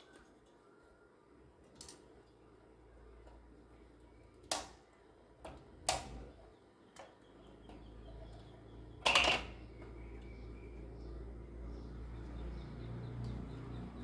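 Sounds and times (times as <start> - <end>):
hard parts clicking and knocking: 9.0 - 9.6.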